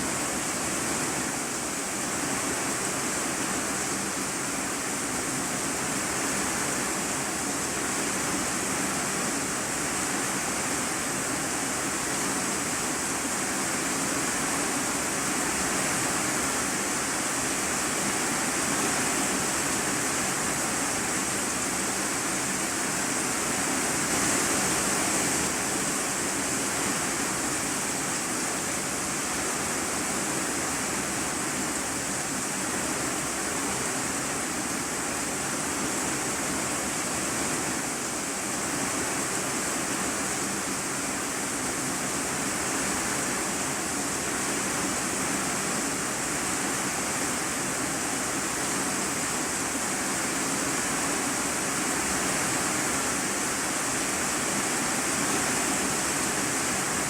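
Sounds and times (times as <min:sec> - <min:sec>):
heavy rain on a metal roof: 0:00.0 - 0:57.0.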